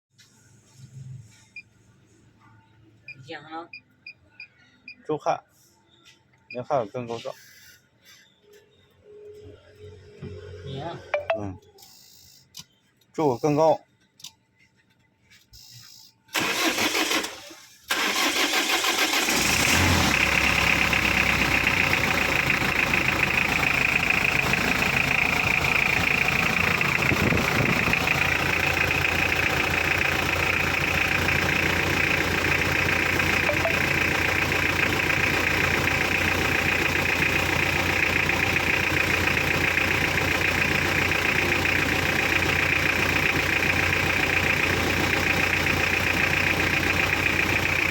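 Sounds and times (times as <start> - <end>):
starter motor cranking: 16.3 - 22.5, 23.1 - 47.9
car engine idling: 17.9 - 47.9.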